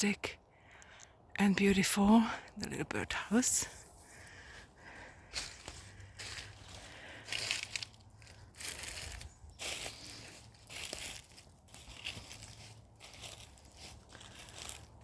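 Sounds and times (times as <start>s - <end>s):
footsteps on forest floor: 3.3s - 15.0s.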